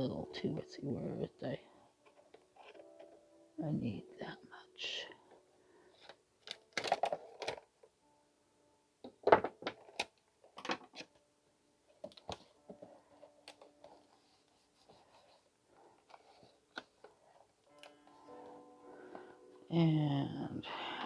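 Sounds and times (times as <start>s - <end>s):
tape crackling and clicking: 6.0s - 8.0s, 9.0s - 11.2s, 11.9s - 14.2s, 15.7s - 19.5s.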